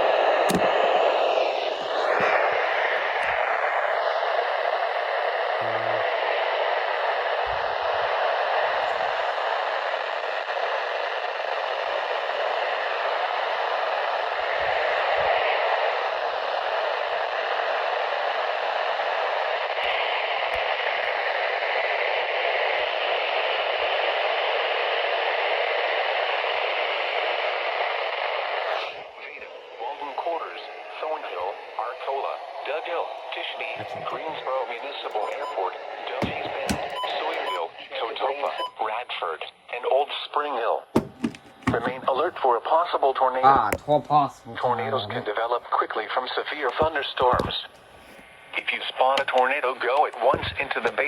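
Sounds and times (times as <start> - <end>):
radio static hiss: 0.0 - 51.0.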